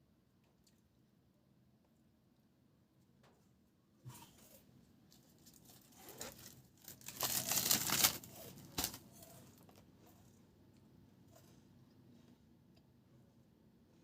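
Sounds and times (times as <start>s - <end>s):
rustling crinkling noise: 4.1s - 9.9s.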